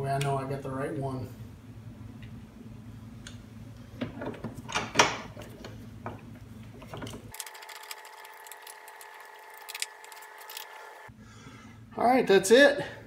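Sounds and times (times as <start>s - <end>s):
tools being handled: 4.2s - 11.0s
electric power tool whirring: 7.3s - 11.1s.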